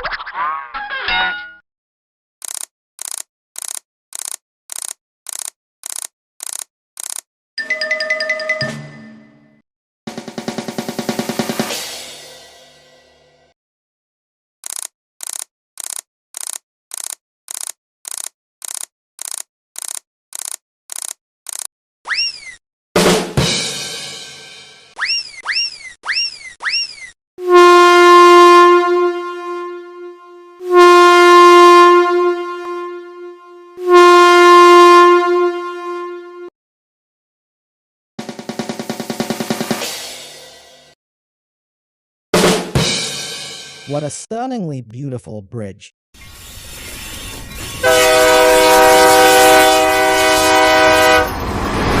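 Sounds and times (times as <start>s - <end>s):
air horn blasts: 27.4s - 36.5s, 47.8s - 51.4s
train running noise: 47.2s - 52.0s.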